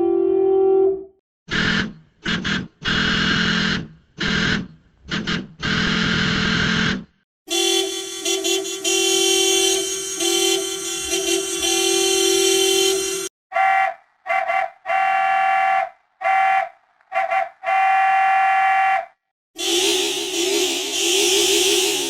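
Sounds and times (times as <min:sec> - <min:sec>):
high car horn beeps and blasts: 0:00.0 - 0:01.2, 0:07.5 - 0:13.7, 0:19.6 - 0:22.0
two-tone car horn held: 0:07.5 - 0:15.6, 0:19.6 - 0:21.9.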